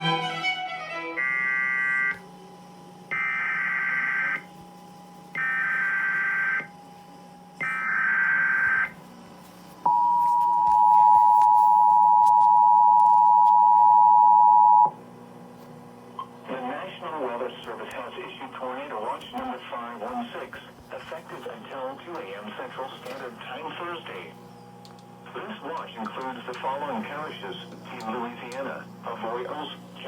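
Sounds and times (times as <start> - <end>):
two-tone attention signal: 9.9 - 14.9.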